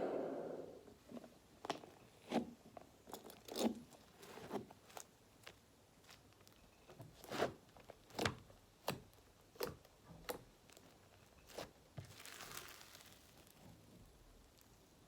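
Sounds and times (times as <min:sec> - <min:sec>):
soft rustle: 0:10.7 - 0:15.0.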